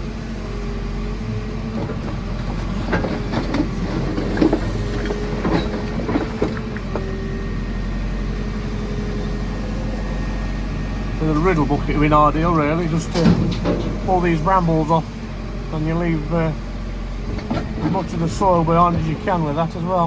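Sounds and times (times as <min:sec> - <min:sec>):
diesel engine running under load: 0:00.0 - 0:20.0
hydraulic whine: 0:00.0 - 0:20.0
bucket knocking and scraping rubble: 0:01.8 - 0:07.0, 0:13.0 - 0:14.7.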